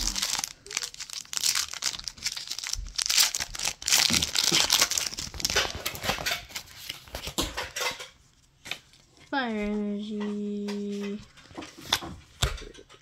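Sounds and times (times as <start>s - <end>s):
foil wrapper crinkling and tearing: 0.0s - 7.4s.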